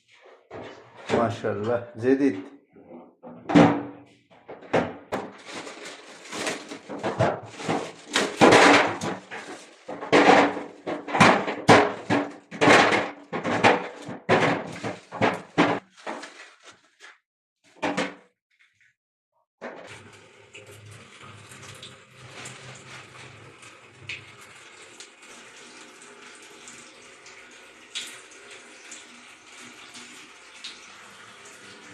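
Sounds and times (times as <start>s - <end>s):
knocks thuds and clatter: 3.2s - 16.2s.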